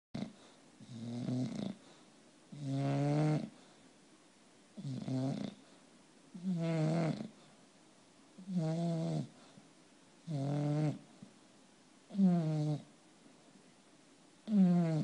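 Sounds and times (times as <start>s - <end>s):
dog snoring loudly: 0.2s - 3.6s, 4.8s - 5.7s, 6.3s - 7.5s, 8.4s - 9.5s, 10.2s - 11.1s, 12.1s - 12.9s, 14.4s - 15.0s.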